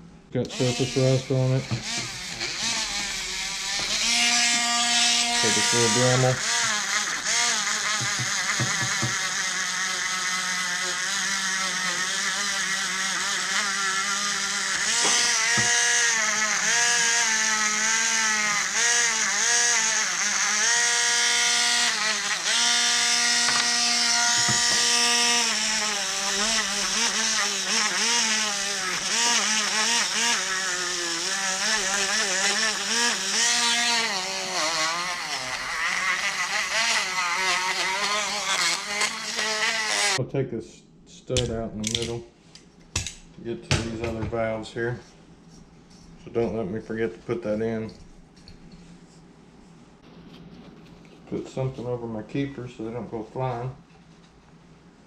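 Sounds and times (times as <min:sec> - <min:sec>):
rotary tool grinding metal: 0:00.5 - 0:40.2.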